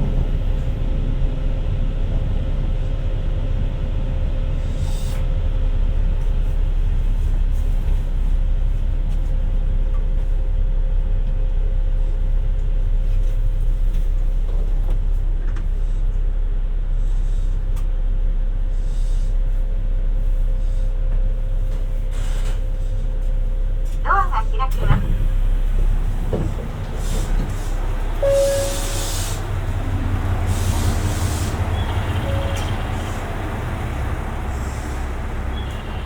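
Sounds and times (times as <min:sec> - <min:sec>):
train engine and wheels rumbling: 0:00.0 - 0:36.0
steady whining tone: 0:25.8 - 0:36.0.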